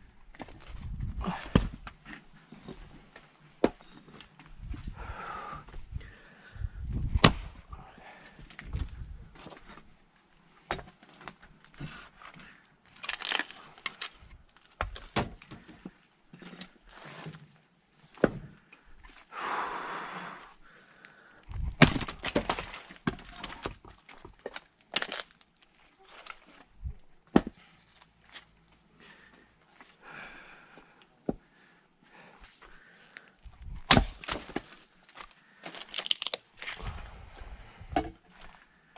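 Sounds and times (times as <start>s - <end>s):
axe splitting firewood: 0.3s - 2.3s, 7.0s - 7.6s, 10.6s - 17.4s, 21.6s - 25.4s, 27.2s - 27.7s, 33.6s - 37.0s.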